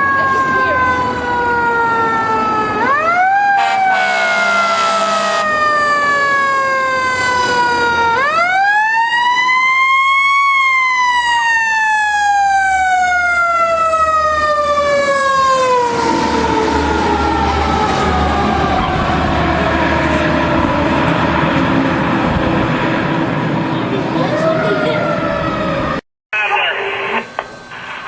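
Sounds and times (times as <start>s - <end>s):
fire engine siren wailing: 0.0s - 28.0s
short harsh horn blast: 3.6s - 5.5s.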